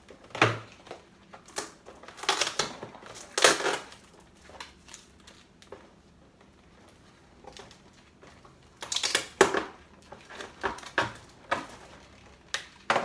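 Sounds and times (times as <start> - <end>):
toy packaging crackling and rustling: 0.0 - 6.0.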